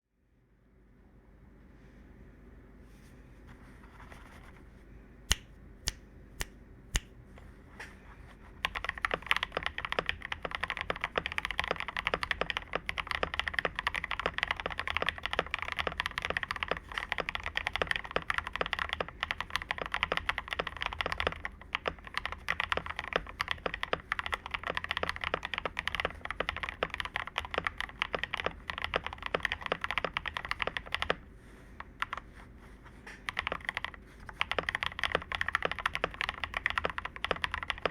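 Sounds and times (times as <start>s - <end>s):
mechanical keyboard typing: 8.6s - 31.2s, 31.9s - 32.3s, 33.2s - 37.9s.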